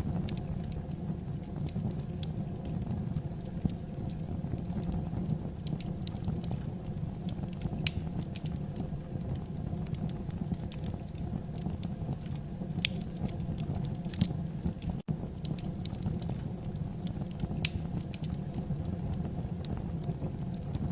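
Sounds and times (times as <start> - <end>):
fire crackling and popping: 0.0 - 20.9
fire rumbling: 0.0 - 20.9.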